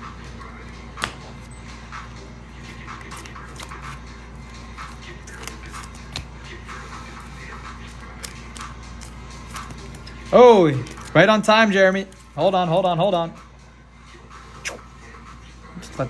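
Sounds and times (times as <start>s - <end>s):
steady low hum: 0.0s - 16.0s
trading cards and wrappers crinkling: 2.7s - 4.0s, 4.8s - 6.3s, 7.3s - 12.6s.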